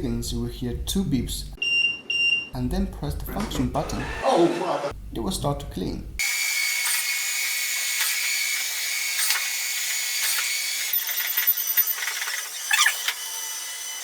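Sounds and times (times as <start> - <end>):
robot vacuum whirring: 6.2 - 14.0.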